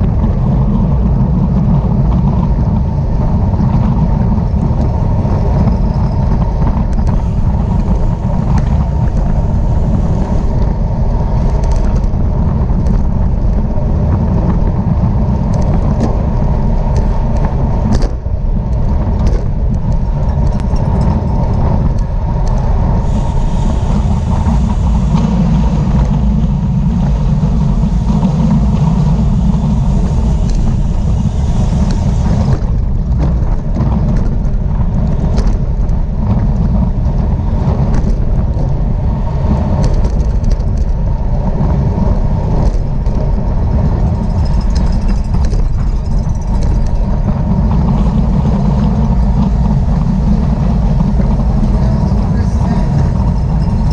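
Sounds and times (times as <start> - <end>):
wind rush on microphone: 0.0 - 53.9.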